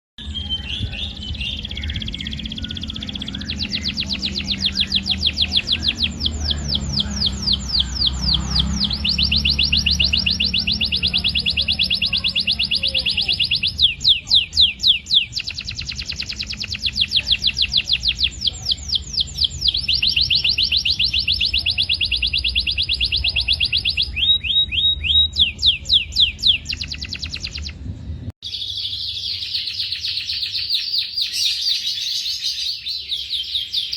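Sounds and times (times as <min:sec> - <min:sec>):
steady low hum: 0:00.2 - 0:21.0
canary singing trills: 0:00.2 - 0:33.9.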